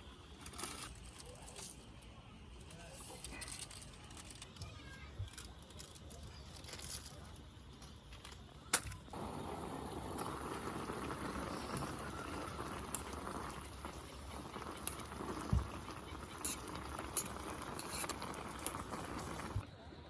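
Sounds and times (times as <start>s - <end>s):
liquid bubbling: 9.2s - 19.6s.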